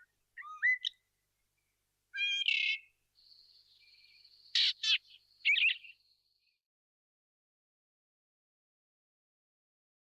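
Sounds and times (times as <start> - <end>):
birds calling: 4.5 - 5.9.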